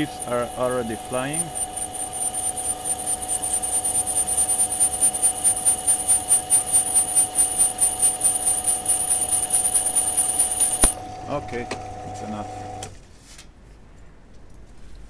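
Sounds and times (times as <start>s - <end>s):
electric drill whining into steel: 0.0s - 11.4s.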